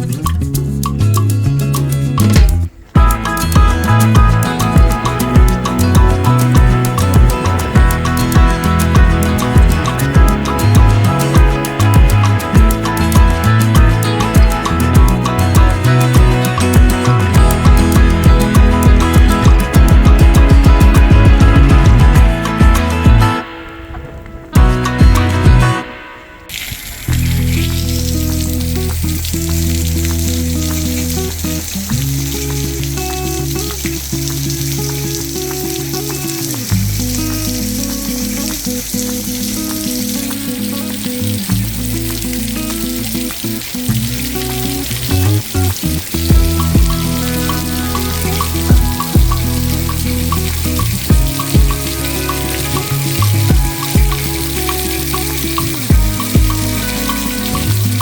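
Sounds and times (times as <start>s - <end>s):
background music with steady beat: 0.0s - 26.6s, 43.6s - 58.0s
crackling hiss: 0.0s - 58.0s.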